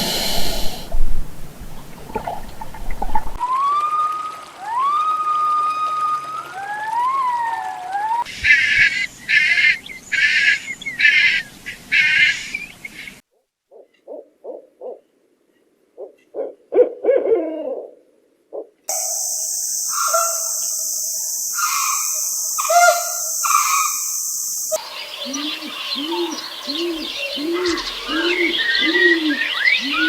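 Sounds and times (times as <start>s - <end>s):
animal call gliding in pitch: 3.4s - 8.3s, 19.8s - 30.0s
low hooting notes: 18.9s - 30.0s.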